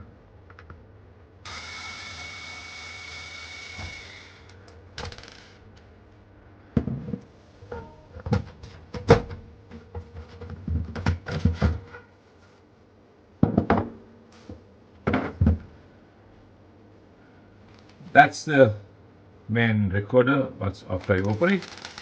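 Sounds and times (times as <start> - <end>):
cordless drill backing out screw: 1.5 - 4.4
knocks and clatters of handling: 6.8 - 12.1.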